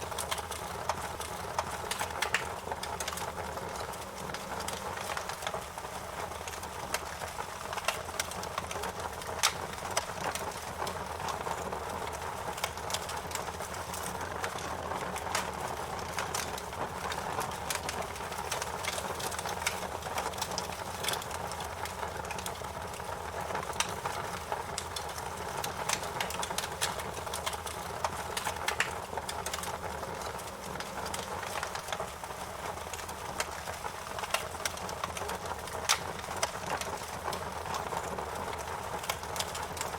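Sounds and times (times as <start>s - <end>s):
wood fire crackling: 0.0s - 39.9s
sharp pops and snaps: 12.1s - 23.0s, 23.6s - 39.9s.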